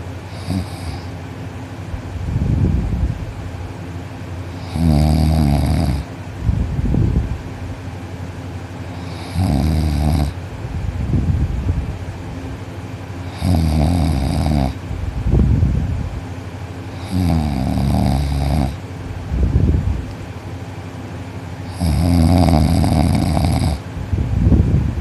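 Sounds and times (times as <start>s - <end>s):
noisy breath: 0.0s - 1.2s, 8.8s - 9.4s
boy snoring loudly: 0.3s - 1.1s, 4.6s - 6.1s, 9.0s - 10.4s, 13.3s - 14.8s, 17.0s - 18.8s, 21.7s - 23.8s.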